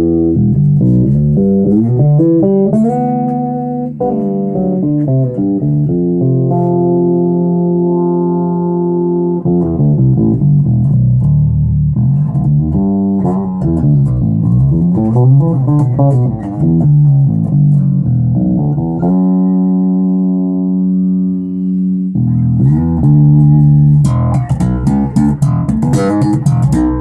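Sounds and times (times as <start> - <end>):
electric bass guitar playing: 0.0 - 27.0.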